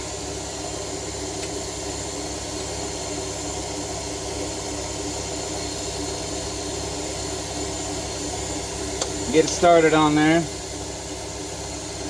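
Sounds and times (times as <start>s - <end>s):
machine drone with low hum: 0.0s - 12.0s.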